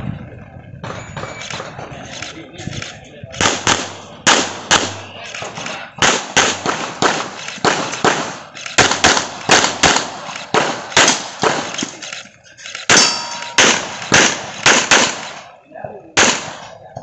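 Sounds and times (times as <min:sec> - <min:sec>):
metallic ring: 0:12.9 - 0:13.7
handgun shots: 0:12.9 - 0:15.4, 0:16.2 - 0:16.7.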